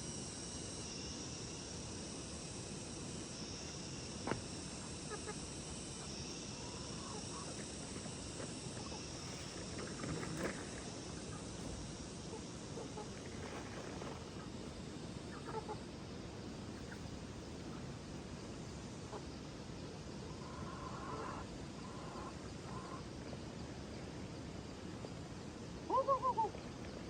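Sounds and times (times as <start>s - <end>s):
steady background hiss: 0.0s - 27.0s
chickens clucking: 15.3s - 15.8s.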